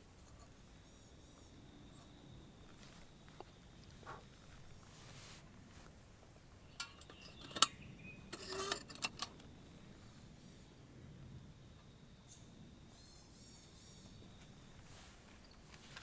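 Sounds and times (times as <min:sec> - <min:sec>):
metal items clinking: 0:08.3 - 0:09.4.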